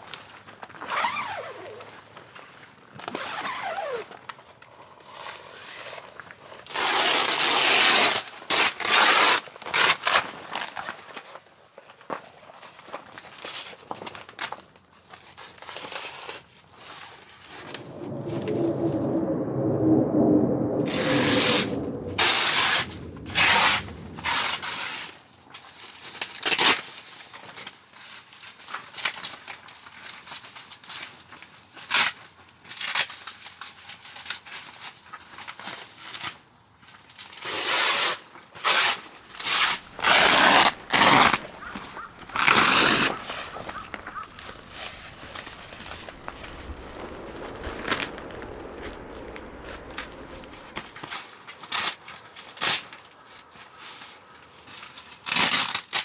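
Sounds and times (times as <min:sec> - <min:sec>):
rustling and crinkling: 0:39.8 - 0:51.0.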